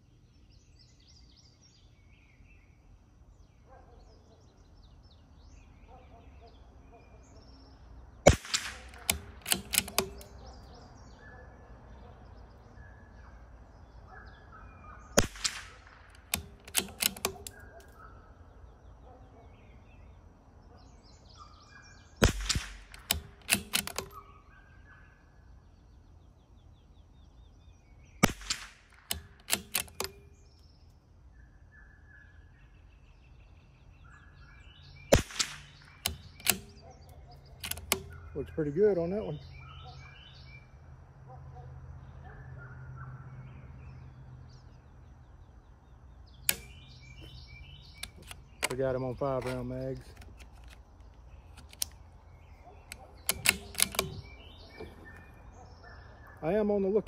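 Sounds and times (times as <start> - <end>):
birds chirping faintly: 0.0 - 57.0
rifle shots: 8.2 - 10.4, 15.2 - 17.6, 22.2 - 24.2, 28.2 - 30.2, 35.1 - 36.8, 52.9 - 54.4
rifle bolt clicks: 8.3 - 10.5, 15.2 - 18.0, 22.2 - 24.3, 28.2 - 30.4, 35.1 - 38.3, 46.4 - 52.1, 52.8 - 55.4.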